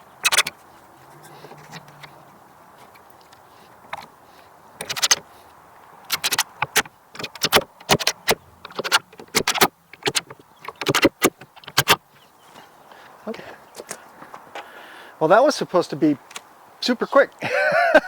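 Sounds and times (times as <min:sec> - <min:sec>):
clattering knocks and clicks: 0:06.1 - 0:12.0.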